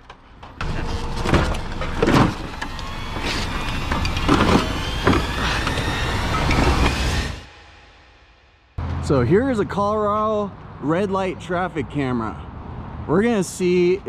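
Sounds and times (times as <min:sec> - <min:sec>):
vehicle running with low rumble: 0:00.6 - 0:07.5.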